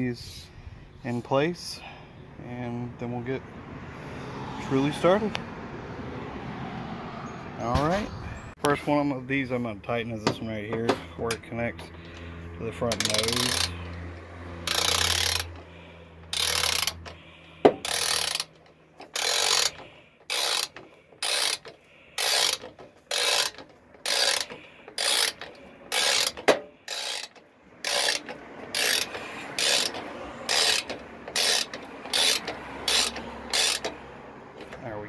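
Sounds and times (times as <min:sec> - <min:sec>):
socket ratchet clicking: 0:11.3 - 0:34.8.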